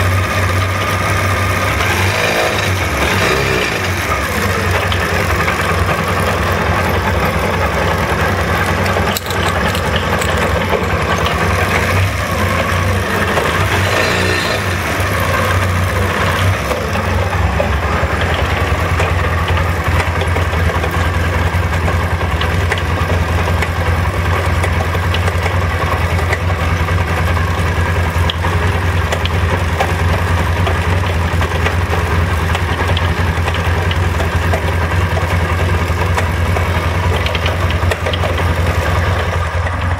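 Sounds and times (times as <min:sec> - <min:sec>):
motorcycle engine idling: 0:00.0 - 0:39.9
chain rattling: 0:06.6 - 0:12.7.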